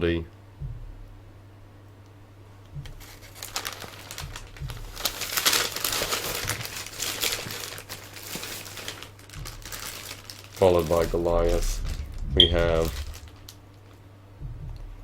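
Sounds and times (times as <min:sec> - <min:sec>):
steady low hum: 0:00.0 - 0:07.3, 0:08.9 - 0:15.0
plastic packaging crinkling: 0:03.0 - 0:12.0.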